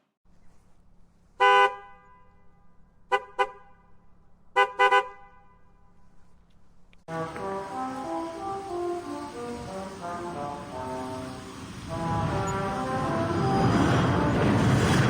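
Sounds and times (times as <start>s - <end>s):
car horn honking: 1.4s - 6.0s, 7.1s - 14.5s
musical horn playing a tune: 7.1s - 15.0s.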